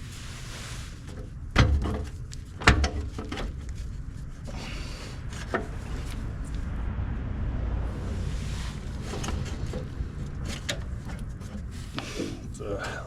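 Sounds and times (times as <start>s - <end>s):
metal clunks and knocks: 1.6s - 3.5s.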